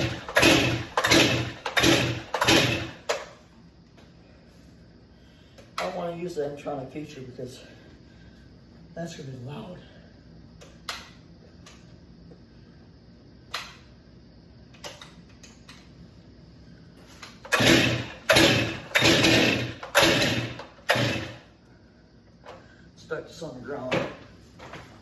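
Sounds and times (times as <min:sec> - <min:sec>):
chainsaw starter cord pulls: 0:00.0 - 0:03.3, 0:17.4 - 0:21.4.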